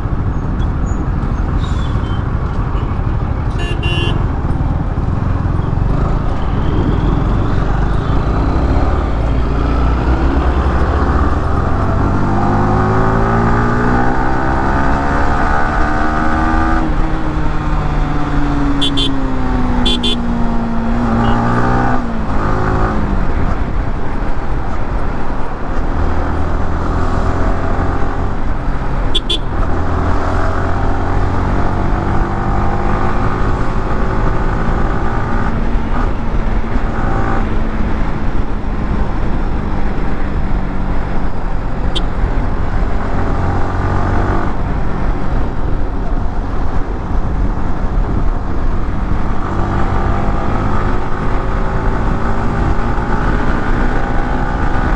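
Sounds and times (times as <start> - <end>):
motorcycle engine revving: 2.0 - 23.2, 26.2 - 36.1.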